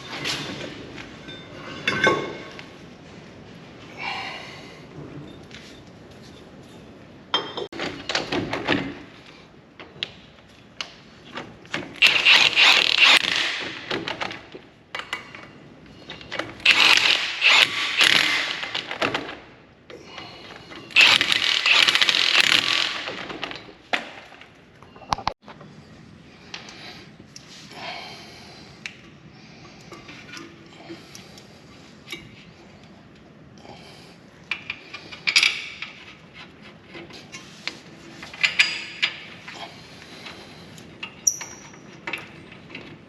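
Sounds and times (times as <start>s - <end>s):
hand tools clinking and knocking: 0.0s - 2.6s, 38.2s - 43.0s
rasping clicking tool: 21.0s - 23.1s.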